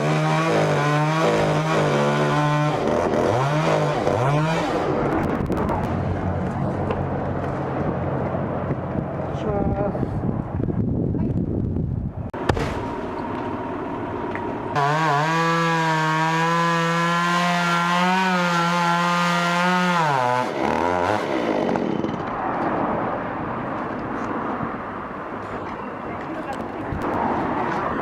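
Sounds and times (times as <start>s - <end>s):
chainsaw cutting wood: 0.0s - 4.9s, 12.4s - 22.4s.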